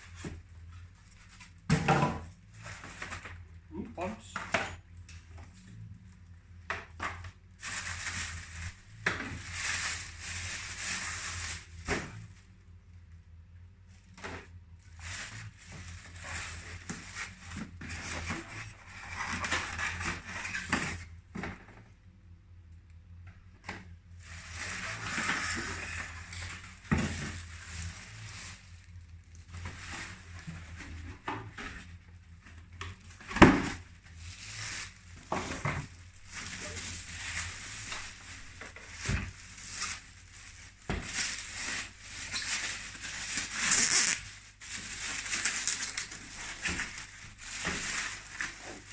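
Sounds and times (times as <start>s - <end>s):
plastic and cardboard rustling: 0.0s - 4.8s, 6.8s - 12.6s, 13.9s - 21.8s, 24.1s - 48.9s
low steady hum: 0.0s - 48.9s.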